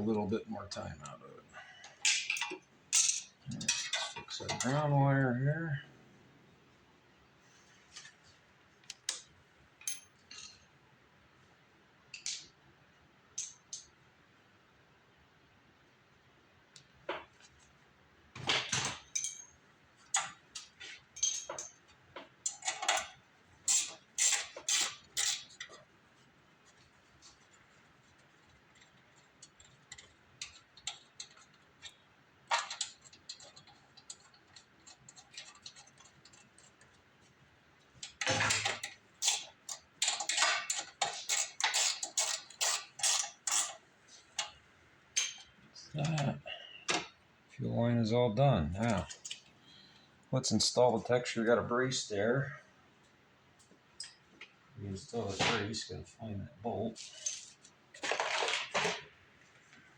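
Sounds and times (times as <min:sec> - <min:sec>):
hand tools clicking and clinking: 0:20.1 - 0:21.8, 0:38.0 - 0:43.8.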